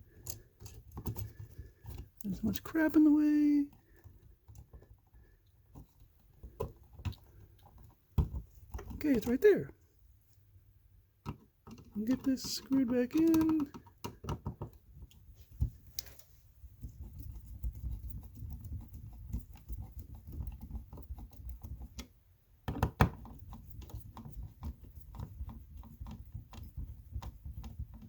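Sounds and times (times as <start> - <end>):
screwdriver clicks and scrapes: 0.2 - 2.2.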